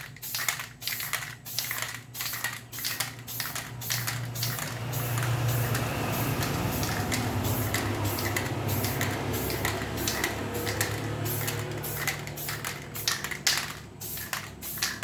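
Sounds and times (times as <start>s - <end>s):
spray paint can hissing: 0.0s - 15.0s.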